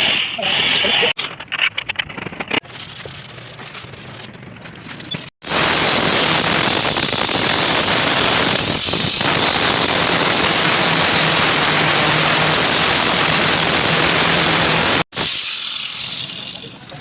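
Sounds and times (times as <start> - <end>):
workshop tool hissing: 5.4 - 17.0.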